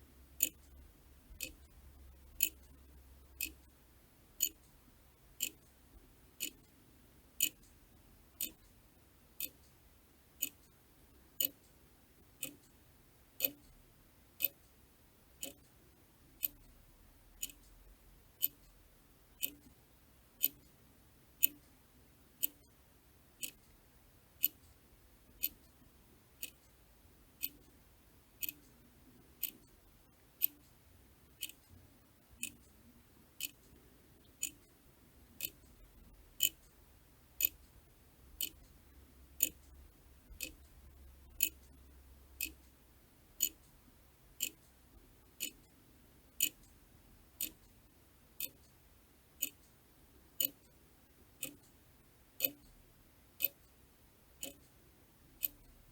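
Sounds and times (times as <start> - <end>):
mechanical clock ticking: 0.4 - 2.8, 3.4 - 3.8, 4.4 - 4.8, 5.4 - 5.8, 6.4 - 6.8, 7.4 - 7.8, 8.4 - 8.8, 9.4 - 9.8, 10.4 - 10.8, 11.4 - 11.8, 12.4 - 12.8, 13.4 - 13.8, 14.4 - 14.7, 15.4 - 15.7, 16.4 - 16.8, 17.4 - 17.8, 18.4 - 18.8, 19.4 - 19.8, 20.4 - 20.8, 21.4 - 21.8, 22.4 - 22.8, 23.4 - 23.7, 24.4 - 25.8, 26.4 - 26.7, 27.4 - 27.8, 28.4 - 28.8, 29.4 - 29.8, 30.4 - 30.8, 31.4 - 31.8, 32.4 - 32.7, 33.4 - 34.7, 35.3 - 36.8, 37.4 - 42.8, 43.4 - 43.8, 44.4 - 46.8, 47.4 - 48.8, 49.4 - 50.8, 51.4 - 51.8, 52.4 - 52.8, 53.4 - 53.8, 54.4 - 55.9.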